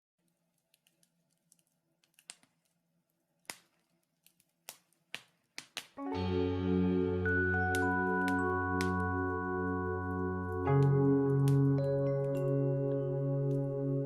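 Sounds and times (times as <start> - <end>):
fire popping: 0.2 - 14.0
wood fire crackling: 0.2 - 14.0
soft music with mallet tones: 6.0 - 14.0.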